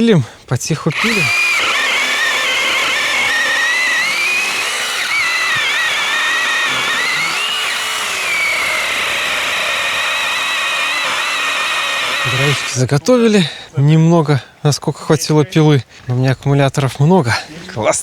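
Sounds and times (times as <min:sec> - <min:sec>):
cordless saw cutting wood: 0:00.8 - 0:13.2.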